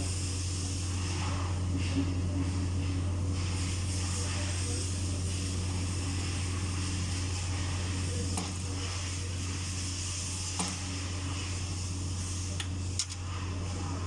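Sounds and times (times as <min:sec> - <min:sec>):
steady low hum: 0:00.0 - 0:14.0
metal parts and tools clicking: 0:13.0 - 0:13.2.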